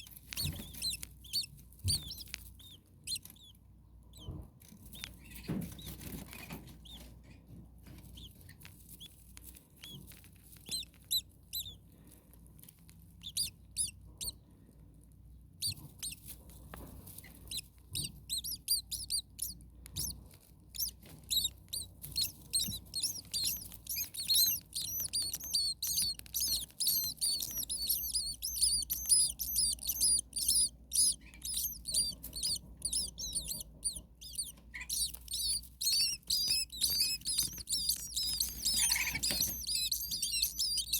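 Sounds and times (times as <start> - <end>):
starlings chirping: 0.0 - 6.2, 13.2 - 14.4, 15.6 - 16.2, 17.4 - 40.9.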